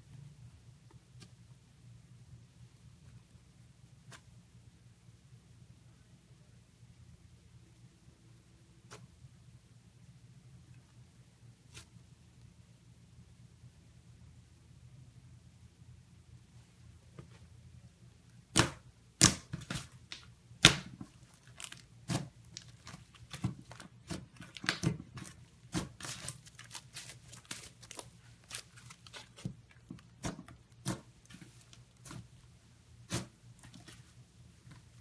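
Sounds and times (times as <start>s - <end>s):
slime popping and crackling: 18.5s - 32.3s.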